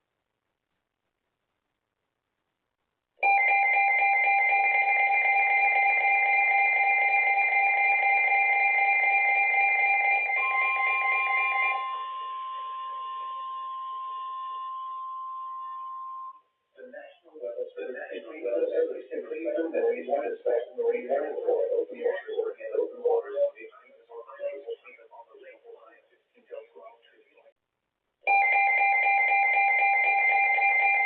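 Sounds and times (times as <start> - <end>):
harsh emergency alert sound: 3.2 - 16.4, 17.8 - 23.6.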